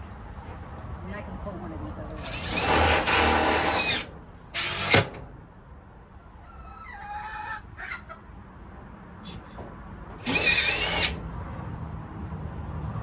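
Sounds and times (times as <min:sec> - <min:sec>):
power drill driving screws: 0:02.2 - 0:05.2, 0:10.2 - 0:11.2.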